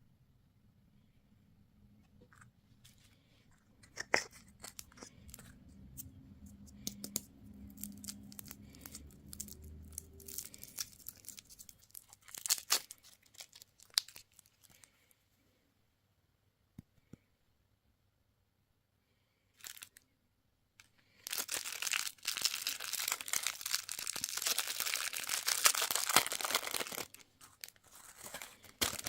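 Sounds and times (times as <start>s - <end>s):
candy wrapper tearing and crinkling: 3.8s - 14.9s, 19.6s - 20.0s, 20.8s - 29.0s.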